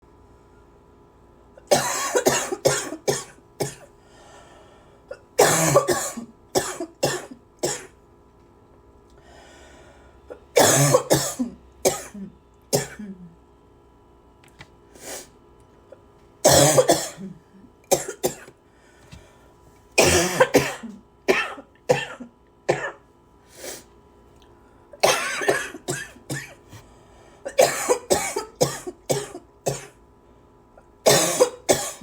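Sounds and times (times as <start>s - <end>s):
person coughing: 1.6s - 3.9s, 5.1s - 8.0s, 10.5s - 13.3s, 16.4s - 18.5s, 20.0s - 23.0s, 25.0s - 26.7s, 27.5s - 30.0s, 31.0s - 32.0s
person breathing: 4.0s - 5.1s, 9.2s - 10.2s, 18.7s - 19.5s, 23.5s - 23.9s, 26.8s - 27.5s.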